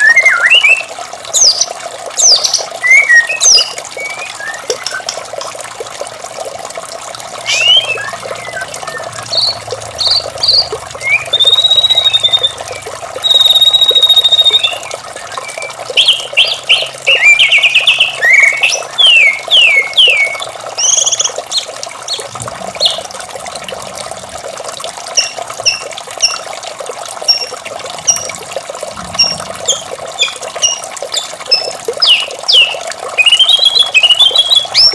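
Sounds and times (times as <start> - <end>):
bird singing whistles and trills: 0.0 - 5.2, 7.4 - 23.0, 29.2 - 34.9
running water: 0.0 - 34.9.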